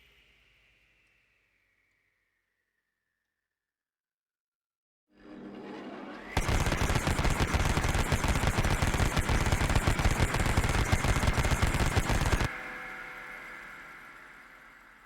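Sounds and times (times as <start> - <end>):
gatling gun firing burst: 6.4 - 12.5.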